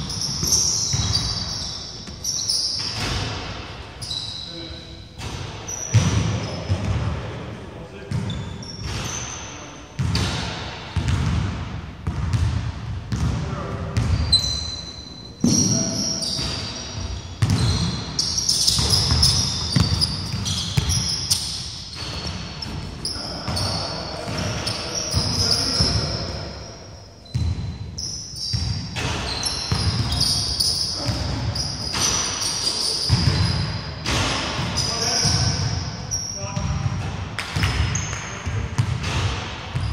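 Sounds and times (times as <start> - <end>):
sneaker squeaks: 0.0 - 7.0, 8.0 - 10.4, 13.9 - 39.9
basketballs bouncing on wood: 18.7 - 23.7.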